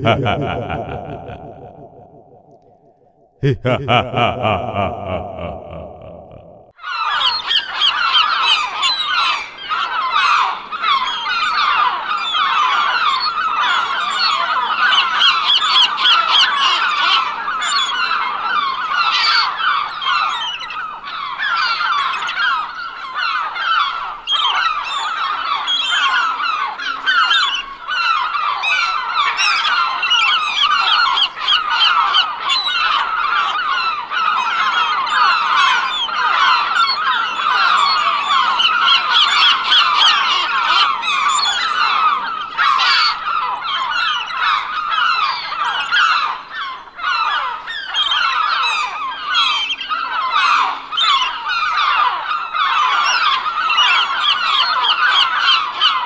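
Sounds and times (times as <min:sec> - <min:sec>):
chorus of high laughing calls: 0:00.0 - 0:11.6, 0:28.2 - 0:46.4.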